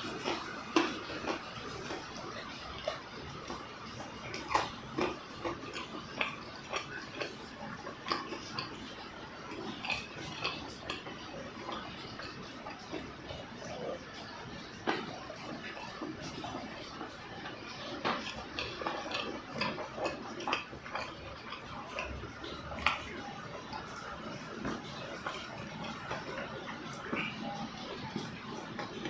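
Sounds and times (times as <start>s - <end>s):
chewing mouth clicks and smacks: 0.0s - 29.0s.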